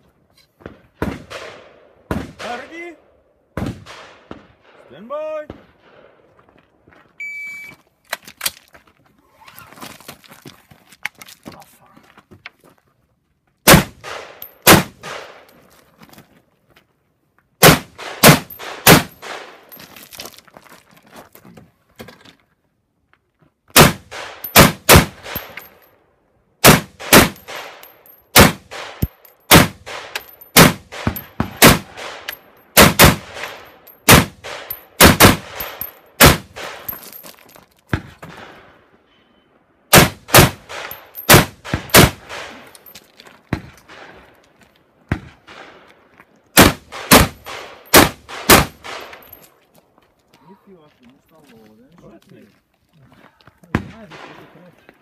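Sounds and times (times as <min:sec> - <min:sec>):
rifle shots: 0:01.0 - 0:02.7, 0:13.7 - 0:15.5, 0:17.6 - 0:19.7, 0:23.8 - 0:25.8, 0:26.6 - 0:37.0, 0:39.9 - 0:42.8, 0:46.6 - 0:49.3, 0:53.8 - 0:54.6
shot timer beep: 0:07.2 - 0:07.8.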